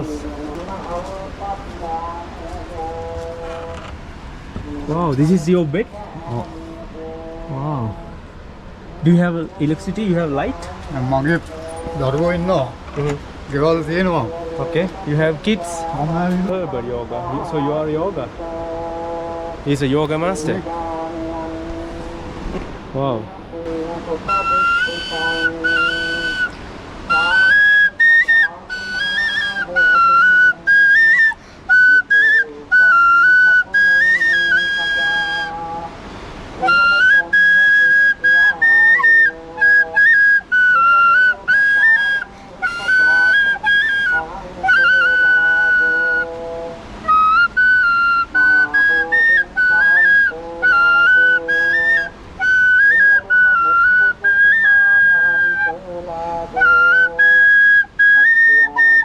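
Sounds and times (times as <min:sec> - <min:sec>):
low sustained accompanying tones: 0:00.0 - 0:59.0
high flute melody: 0:23.8 - 0:35.8, 0:36.6 - 0:55.9, 0:56.5 - 0:59.0.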